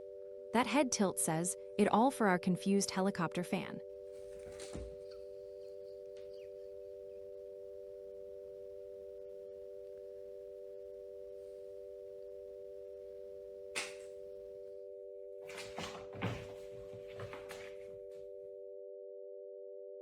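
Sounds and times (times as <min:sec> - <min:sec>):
electronic drone of pure tones: 0:00.0 - 0:02.4, 0:03.6 - 0:15.6.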